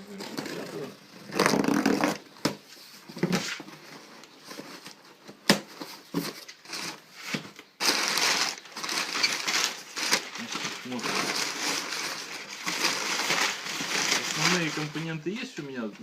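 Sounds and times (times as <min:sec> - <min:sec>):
packaging tearing: 0:00.2 - 0:02.3, 0:07.8 - 0:15.1.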